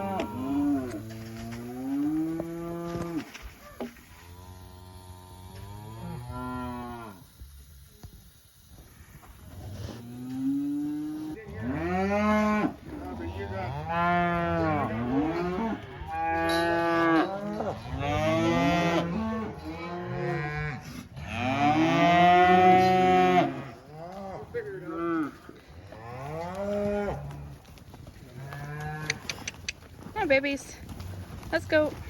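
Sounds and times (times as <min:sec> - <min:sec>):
calves bawling: 0:08.8 - 0:32.0.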